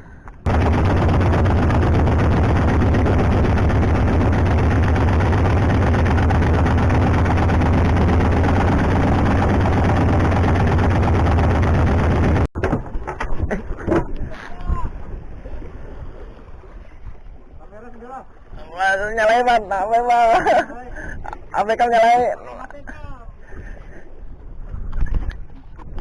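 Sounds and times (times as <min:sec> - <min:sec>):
boat engine running: 0:00.5 - 0:12.5.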